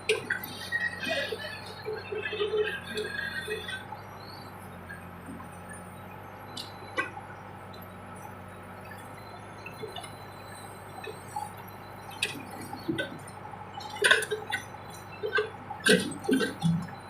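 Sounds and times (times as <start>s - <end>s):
backhoe engine hum: 0.0s - 17.0s.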